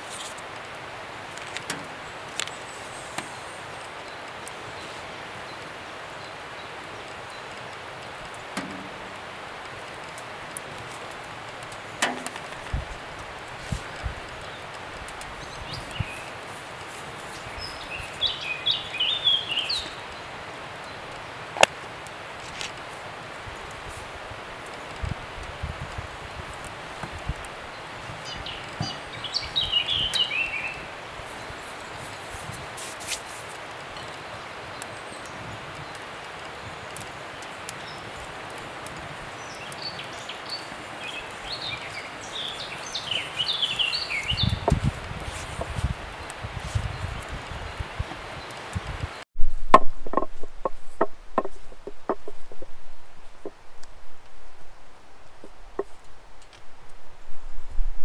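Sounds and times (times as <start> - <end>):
steady outdoor hiss: 0.0 - 58.0
small birds chirping: 1.2 - 21.8, 25.9 - 49.2
bird chirping: 15.3 - 16.4, 17.2 - 21.0, 27.7 - 32.6, 39.4 - 49.2.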